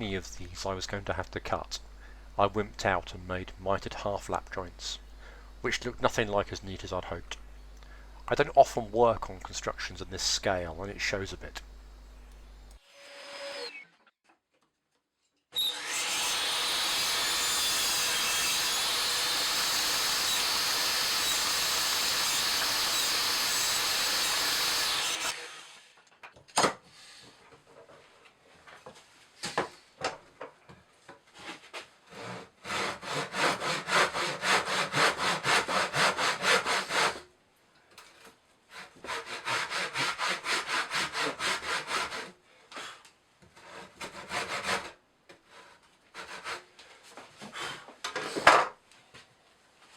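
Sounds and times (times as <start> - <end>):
hand saw cutting wood: 15.6 - 25.9, 31.4 - 37.3, 38.7 - 48.4
power tool running: 15.6 - 25.9.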